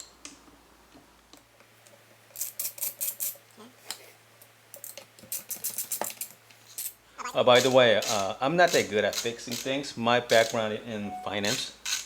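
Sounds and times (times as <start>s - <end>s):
hand tool clicking on bolts: 7.6s - 10.6s.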